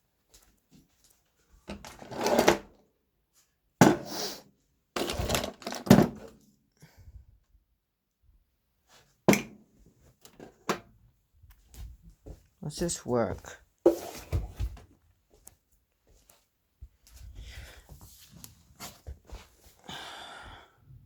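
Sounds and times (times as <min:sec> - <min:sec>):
tools clattering and rustling: 0:05.0 - 0:06.3.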